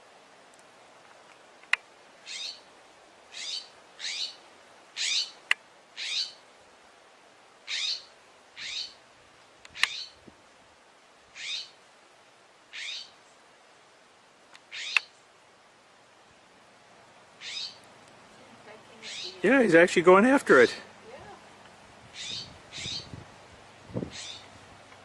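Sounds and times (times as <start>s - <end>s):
bird calling scratchy calls: 2.2s - 2.6s, 3.3s - 4.4s, 5.0s - 6.4s, 7.7s - 9.0s, 9.7s - 10.2s, 11.3s - 11.8s, 12.7s - 13.2s, 14.6s - 15.2s, 17.4s - 17.9s, 19.0s - 19.4s, 22.1s - 23.1s, 24.1s - 24.5s.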